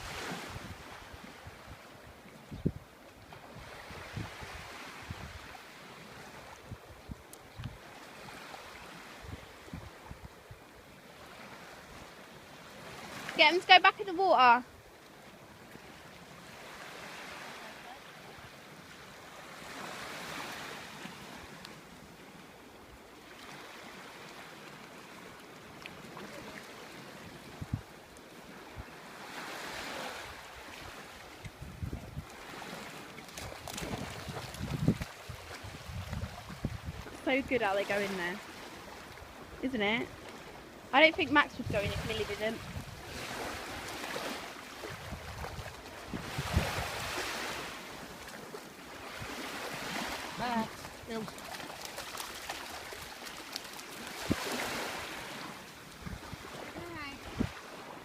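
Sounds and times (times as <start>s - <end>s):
sea waves washing ashore: 0.0s - 58.0s
wind on microphone: 2.5s - 5.6s, 27.5s - 28.0s, 31.4s - 32.7s, 33.4s - 38.3s, 41.2s - 47.7s, 54.2s - 55.3s, 56.0s - 58.0s.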